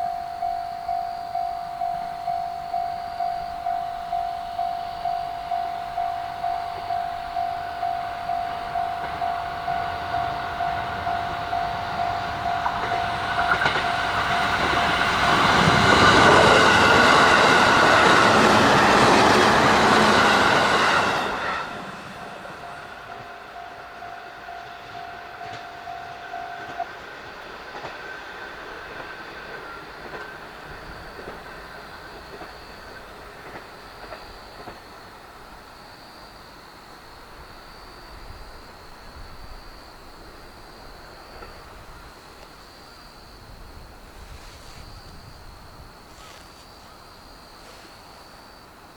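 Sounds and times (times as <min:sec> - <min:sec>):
level crossing bell ringing: 0:00.0 - 0:15.0
electric train passing: 0:00.0 - 0:48.9.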